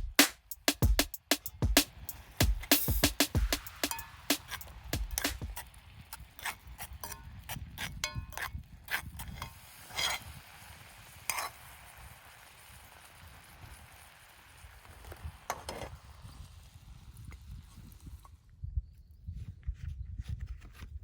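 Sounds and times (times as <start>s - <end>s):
faint hiss: 0.0s - 6.3s, 9.4s - 18.4s
metal utensils and cookware clinking: 11.3s - 11.5s.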